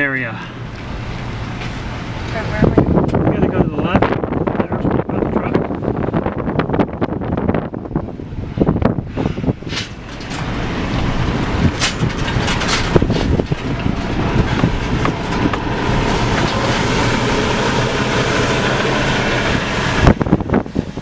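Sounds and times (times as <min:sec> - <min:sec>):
vehicle driving over rough ground: 0:08.6 - 0:21.0
sharp knocks and rattles: 0:09.8 - 0:17.2.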